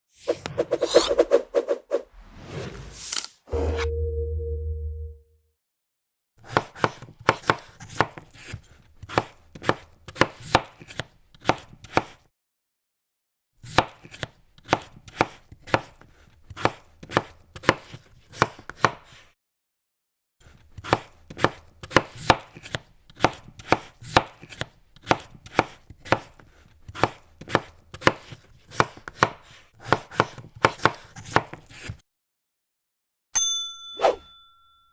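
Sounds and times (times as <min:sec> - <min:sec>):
bright metallic ding: 0:03.5 - 0:05.2, 0:33.4 - 0:34.9
knife chopping on wooden board: 0:06.4 - 0:08.5, 0:09.1 - 0:12.2, 0:13.7 - 0:16.0, 0:16.6 - 0:19.2, 0:20.8 - 0:26.4, 0:27.0 - 0:32.0.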